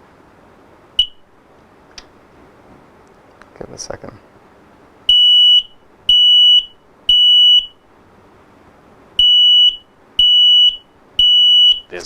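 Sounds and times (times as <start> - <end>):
smoke alarm beeping: 1.0 - 1.3, 5.1 - 7.8, 9.2 - 12.0.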